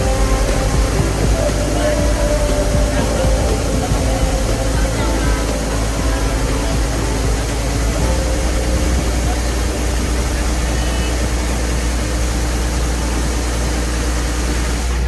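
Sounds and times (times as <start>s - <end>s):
combine harvester engine running: 0.0s - 15.0s.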